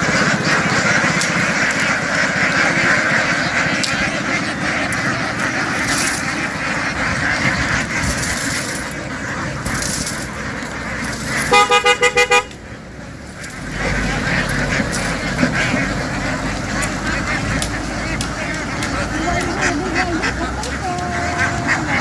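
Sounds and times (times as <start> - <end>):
noisy background din: 0.0 - 22.0
vehicle horn short beeps: 11.5 - 12.5.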